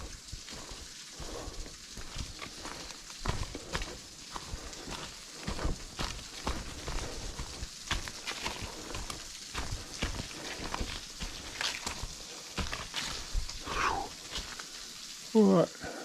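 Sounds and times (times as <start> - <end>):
footsteps on dry leaves and rocks: 0.0 - 15.4.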